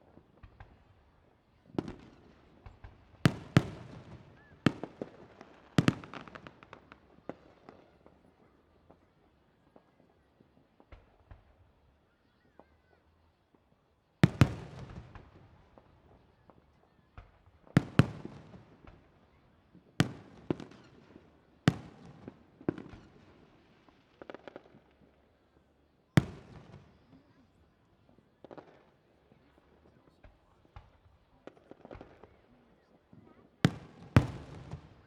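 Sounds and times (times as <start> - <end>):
small firework pops: 0.0 - 25.4, 26.2 - 35.0
firework booms: 33.6 - 35.0.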